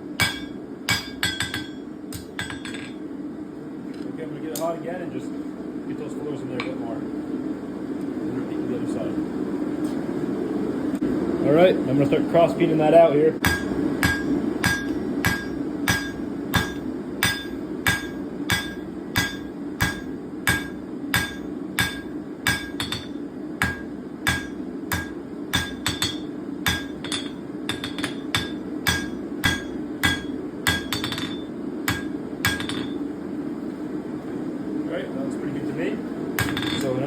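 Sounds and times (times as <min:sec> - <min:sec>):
hammer ringing on hot steel: 0:00.1 - 0:03.0, 0:13.4 - 0:33.0, 0:36.4 - 0:37.0.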